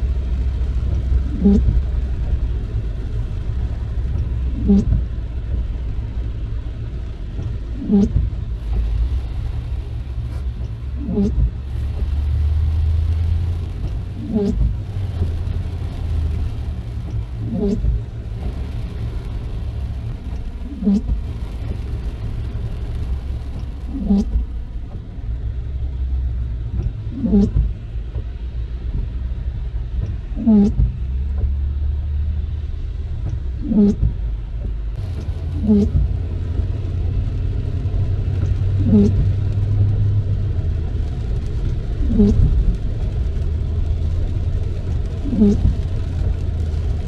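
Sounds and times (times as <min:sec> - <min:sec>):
road and tyre rumble: 0:00.0 - 0:47.0
windshield wipers squeaking: 0:00.9 - 0:01.9, 0:04.1 - 0:05.6, 0:07.3 - 0:25.1, 0:26.8 - 0:28.3, 0:30.0 - 0:31.5, 0:33.2 - 0:36.2, 0:37.8 - 0:39.3, 0:42.0 - 0:42.7, 0:44.8 - 0:46.2.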